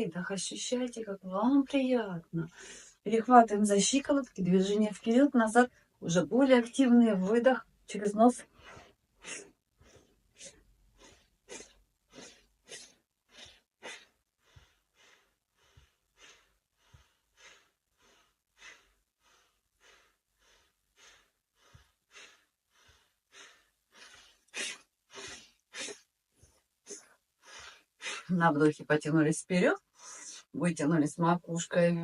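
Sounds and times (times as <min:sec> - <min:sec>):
woman breathing through the nose: 0:02.5 - 0:03.0, 0:08.4 - 0:28.3.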